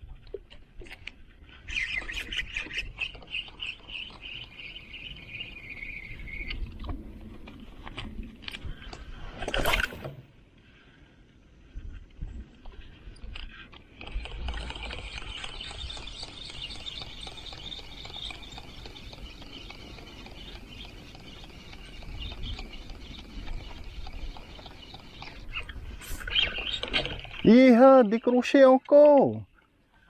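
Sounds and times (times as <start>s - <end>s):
fishing reel ticking whir: 1.6s - 6.9s, 12.6s - 27.8s.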